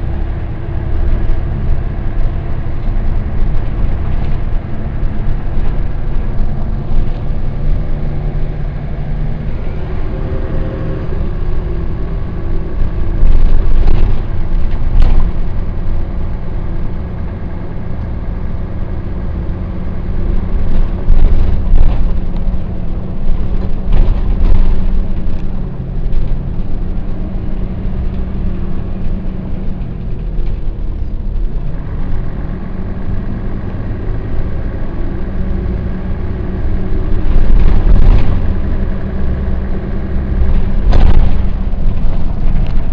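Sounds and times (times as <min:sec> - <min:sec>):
bus diesel engine running: 0:00.0 - 0:42.9
knocks and rattles: 0:12.6 - 0:15.9, 0:20.2 - 0:31.8, 0:36.8 - 0:42.9.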